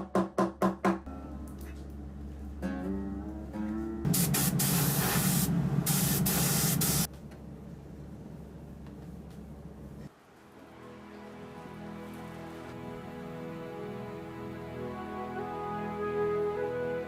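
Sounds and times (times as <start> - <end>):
plucked guitar notes: 1.1 - 4.1
compressed-air spray hissing: 4.1 - 7.1.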